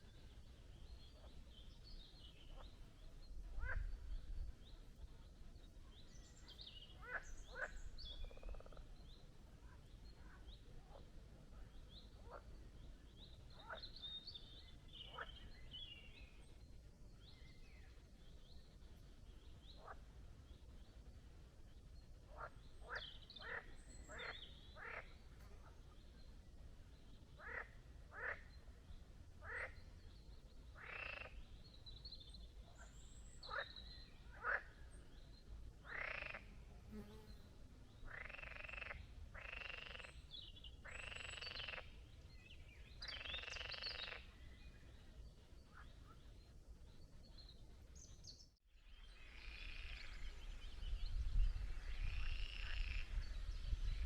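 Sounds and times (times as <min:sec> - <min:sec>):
frogs croaking: 0:07.0 - 0:09.0, 0:22.3 - 0:25.1, 0:27.4 - 0:28.5, 0:29.4 - 0:29.8, 0:30.8 - 0:31.4, 0:34.3 - 0:34.7, 0:35.8 - 0:36.5, 0:38.1 - 0:40.2, 0:40.8 - 0:41.9, 0:43.0 - 0:44.4, 0:52.1 - 0:53.1.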